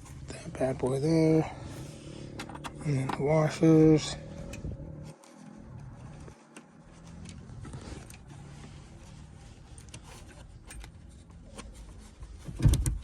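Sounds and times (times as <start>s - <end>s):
faint handling noise: 0.0s - 13.0s.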